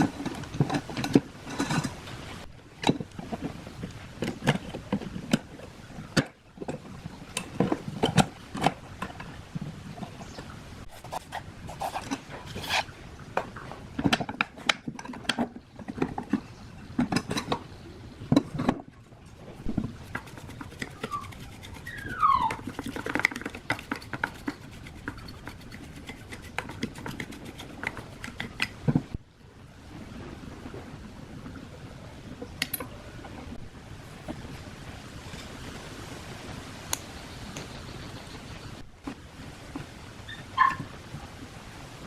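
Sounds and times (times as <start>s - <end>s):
short scrapes: 10.8s - 12.9s
falling squeak: 21.0s - 22.7s, 40.3s - 40.9s.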